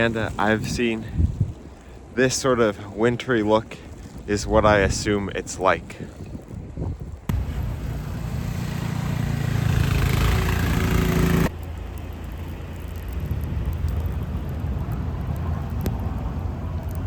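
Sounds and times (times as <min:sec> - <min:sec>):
street noise with low hum: 0:07.2 - 0:17.0
vehicle engine running: 0:07.3 - 0:13.1.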